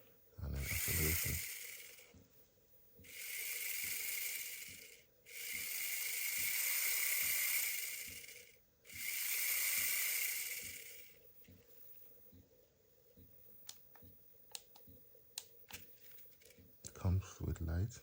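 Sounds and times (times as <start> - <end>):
toy truck motor whining: 0.5 - 2.1, 3.0 - 11.2.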